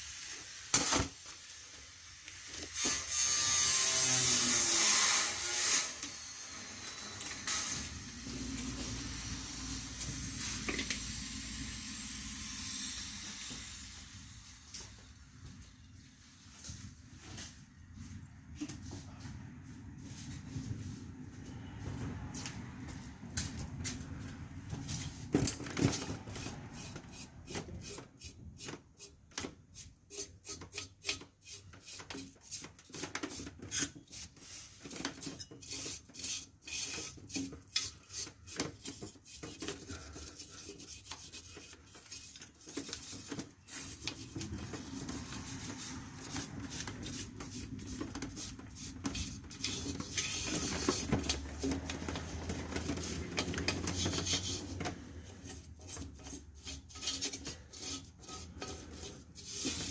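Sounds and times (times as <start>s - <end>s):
hand scraping brake part: 21.5s - 59.9s.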